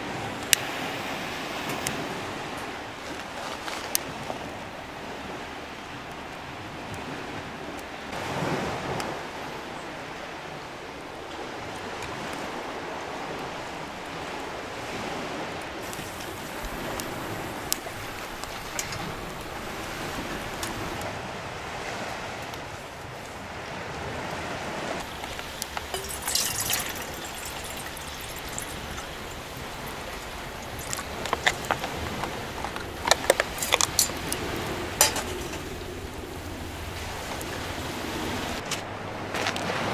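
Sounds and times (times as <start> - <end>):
ocean surf: 0.0 - 39.9
wood fire crackling: 15.8 - 21.0, 25.0 - 38.8
metal kettle clinking: 25.1 - 36.2.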